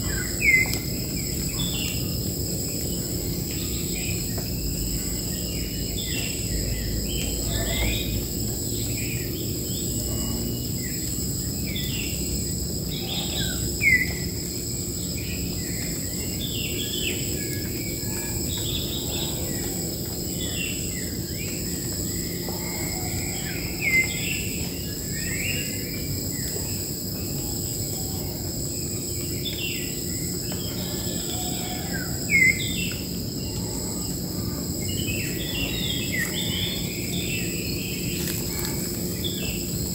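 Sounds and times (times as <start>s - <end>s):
birds chirping and calling: 0.0s - 11.0s, 12.8s - 14.3s, 15.1s - 28.5s, 29.2s - 39.9s
high-pitched insect drone: 0.0s - 39.9s.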